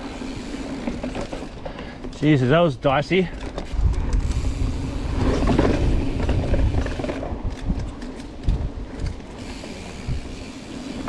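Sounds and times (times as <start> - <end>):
tyres rumbling on dirt: 0.0 - 11.0
wind on microphone: 3.6 - 10.5
bike freehub ratchet clicking: 3.6 - 11.0.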